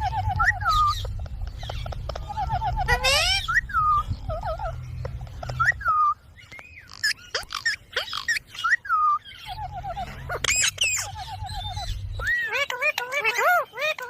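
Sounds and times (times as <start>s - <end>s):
low rumble: 0.0s - 6.9s, 9.4s - 12.5s
parrot whistling and chirping: 0.0s - 14.0s.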